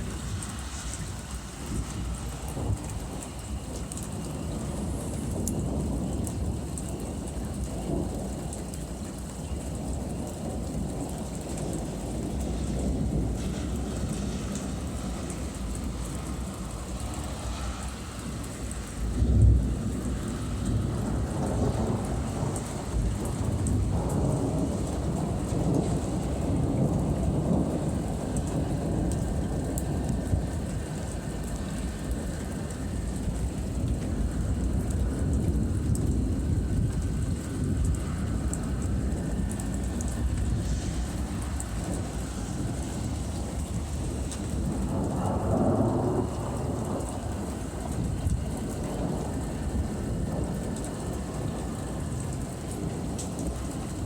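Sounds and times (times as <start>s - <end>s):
rolling rumbles of thunder: 0.0s - 54.0s
steady rain falling: 0.0s - 54.0s
loud thunderclap: 19.0s - 30.7s, 38.7s - 54.0s.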